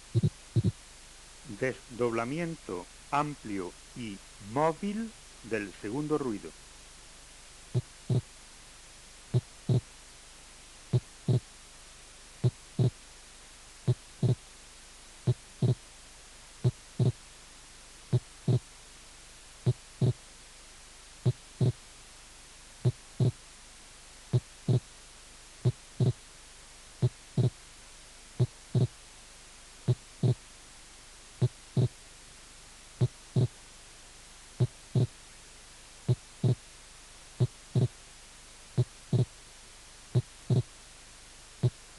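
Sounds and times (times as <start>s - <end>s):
heartbeat sounds: 0.0s - 0.8s, 7.7s - 8.3s, 9.3s - 9.9s, 10.9s - 11.5s, 12.4s - 13.0s, 13.8s - 14.5s, 15.2s - 15.9s, 16.6s - 17.2s, 18.1s - 18.7s, 19.6s - 20.2s, 21.2s - 21.8s, 22.8s - 23.4s, 24.3s - 24.9s, 25.6s - 26.2s, 27.0s - 27.6s, 28.4s - 29.0s, 29.8s - 30.5s, 31.4s - 32.0s, 33.0s - 33.6s, 34.6s - 35.2s, 36.0s - 36.7s, 37.4s - 38.0s, 38.7s - 39.4s, 40.1s - 40.8s, 41.6s - 41.9s.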